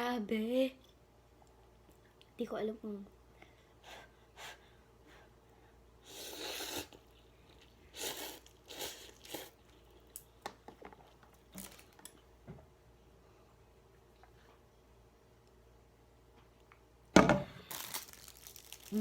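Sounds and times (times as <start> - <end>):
noodle slurping: 6.1 - 10.0.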